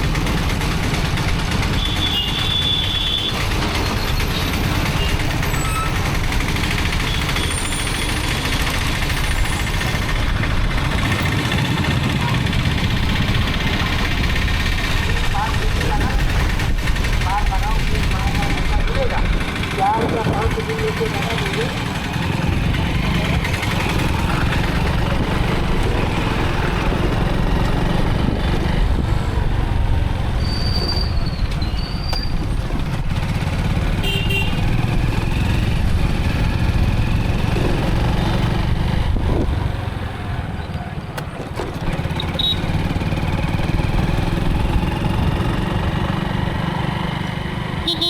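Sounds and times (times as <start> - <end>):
motorcycle engine rumble: 0.0 - 48.0
wind on microphone: 38.9 - 39.7.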